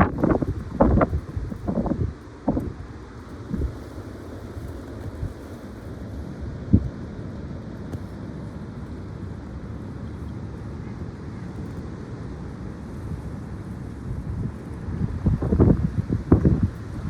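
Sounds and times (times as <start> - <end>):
wind buffeting microphone: 0.0 - 7.1, 12.9 - 17.0.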